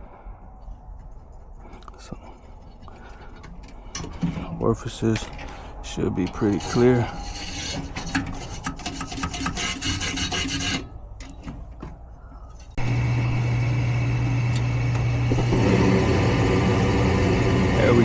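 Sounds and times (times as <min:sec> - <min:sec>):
metal parts scraping and rattling: 0:02.4 - 0:12.8.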